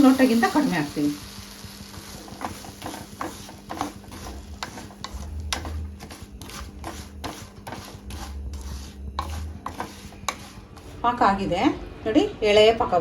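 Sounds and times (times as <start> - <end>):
low steady hum: 0.0 - 13.0
metal spoon scraping a pan: 1.9 - 11.2.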